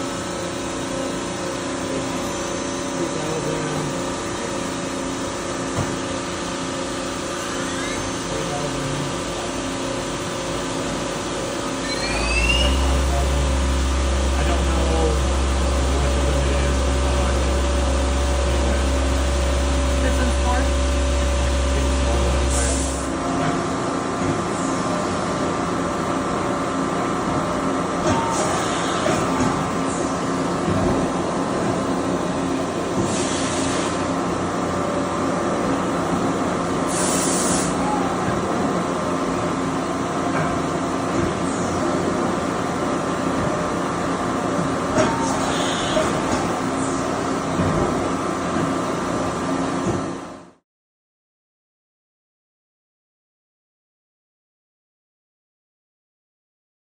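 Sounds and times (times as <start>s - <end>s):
lathe machine hum: 0.0s - 50.4s
rising machine whine: 7.2s - 8.4s, 11.5s - 23.4s
lathe running: 10.4s - 26.6s.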